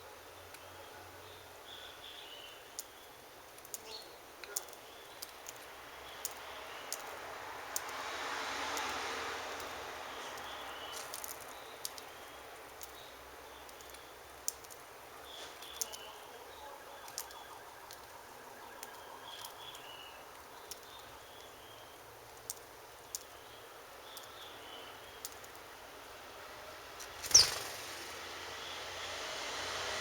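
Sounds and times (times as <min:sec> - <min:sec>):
small birds chirping: 0:00.2 - 0:07.2, 0:10.0 - 0:17.6, 0:18.8 - 0:26.2, 0:26.9 - 0:29.0.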